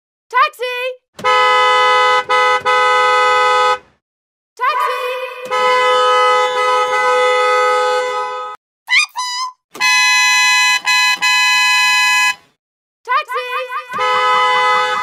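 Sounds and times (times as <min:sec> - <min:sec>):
taxi horn honking: 0:01.2 - 0:03.9, 0:05.4 - 0:08.6, 0:09.8 - 0:12.5, 0:13.8 - 0:15.0.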